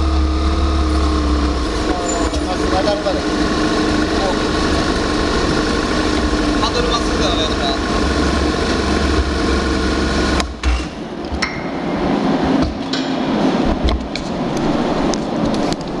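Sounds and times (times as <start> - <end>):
motorcycle engine running: 0.0 - 11.2.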